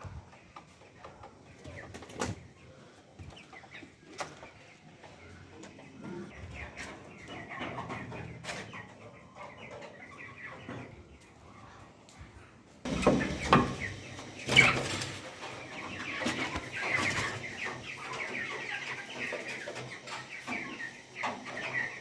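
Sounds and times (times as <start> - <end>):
chicks chirping and clucking: 0.0 - 22.0.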